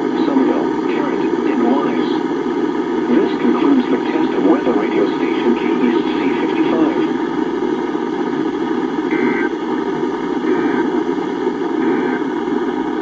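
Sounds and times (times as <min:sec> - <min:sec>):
radio static: 0:00.0 - 0:13.0
warbling data bursts: 0:09.1 - 0:09.6.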